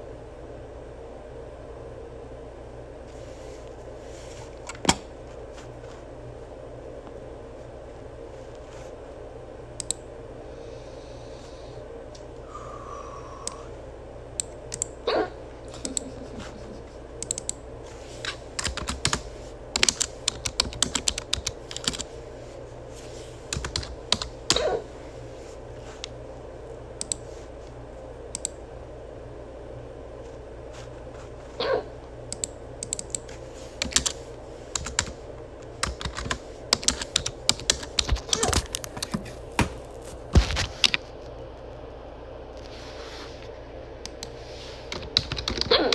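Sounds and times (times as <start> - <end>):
person hiccuping: 15.0 - 15.4, 24.5 - 24.9, 31.6 - 32.0, 45.7 - 45.9
rapid clicking and tapping: 18.6 - 19.2, 19.8 - 22.1, 23.5 - 24.6, 33.8 - 34.2, 34.8 - 35.2, 35.8 - 39.2, 44.9 - 45.8.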